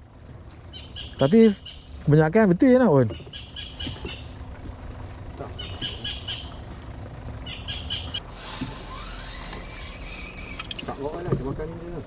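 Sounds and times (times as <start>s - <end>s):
bird chirping: 0.7s - 2.0s, 3.1s - 4.4s, 5.5s - 6.7s, 7.4s - 10.8s.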